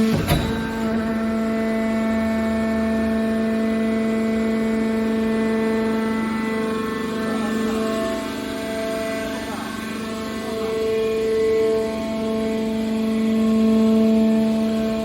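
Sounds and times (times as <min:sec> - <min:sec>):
hydraulic motor and pump hum: 0:00.0 - 0:06.6.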